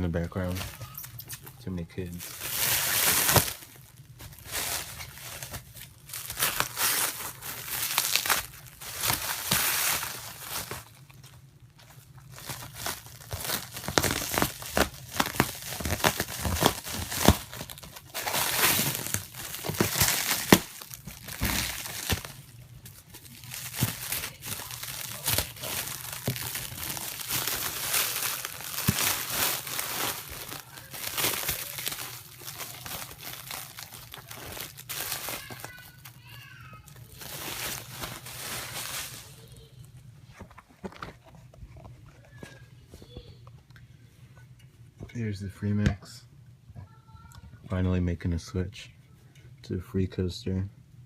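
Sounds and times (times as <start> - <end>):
wrapping crinkling and tearing: 0.1 - 39.9.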